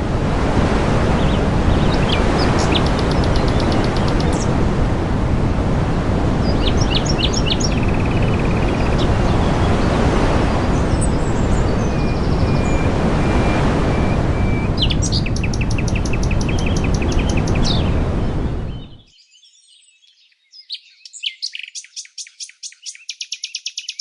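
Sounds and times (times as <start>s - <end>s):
loud steady rushing noise: 0.0s - 19.0s
songbirds chirping: 0.7s - 4.6s, 6.2s - 24.0s.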